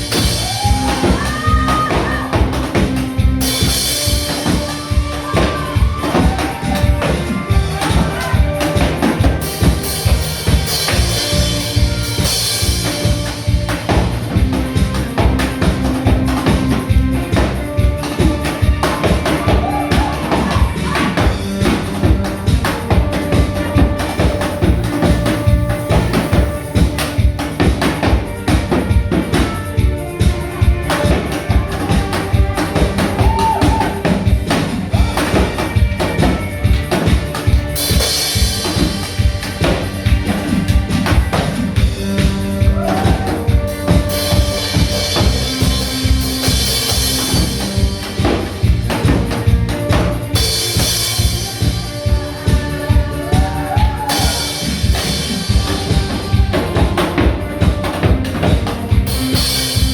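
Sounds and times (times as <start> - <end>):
upbeat music with fast drum beat: 0.0 - 59.9.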